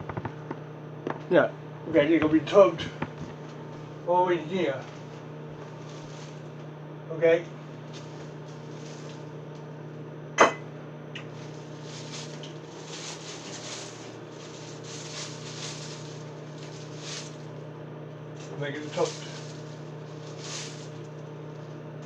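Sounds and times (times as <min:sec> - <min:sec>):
microwave oven humming: 0:00.0 - 0:22.0
soft rustling handling noises: 0:04.6 - 0:06.8, 0:07.5 - 0:09.6, 0:11.2 - 0:17.7, 0:18.3 - 0:21.8.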